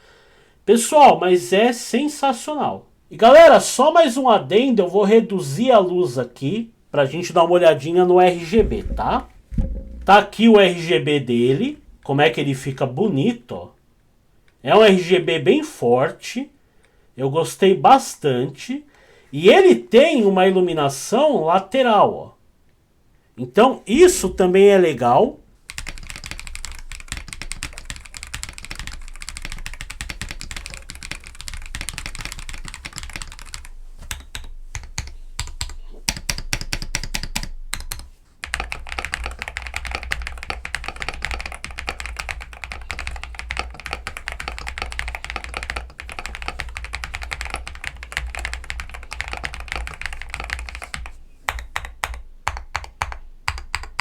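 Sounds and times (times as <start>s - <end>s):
mechanical keyboard typing: 25.7s - 54.0s.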